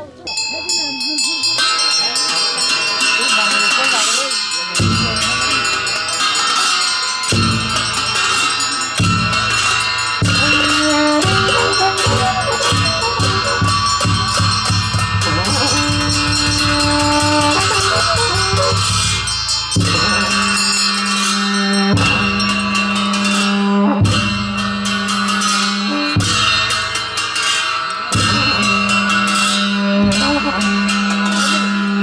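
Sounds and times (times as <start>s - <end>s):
fast drum beat: 9.0s - 20.9s
held bass notes: 10.2s - 20.9s, 28.2s - 32.0s.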